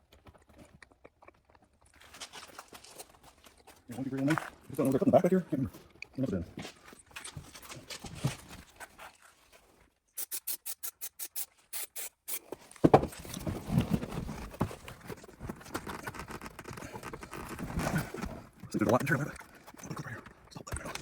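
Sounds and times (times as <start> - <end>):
car interior parts rustling and knocking: 12.6 - 19.3.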